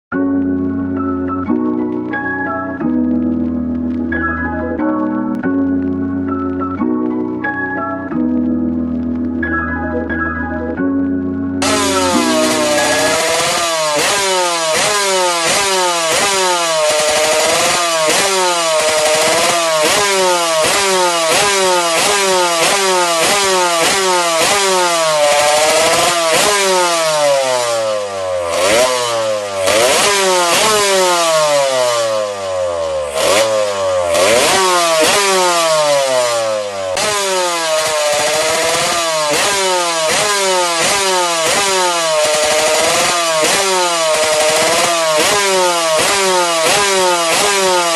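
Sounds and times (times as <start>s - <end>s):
high-revving motor whine: 11.6s - 47.9s.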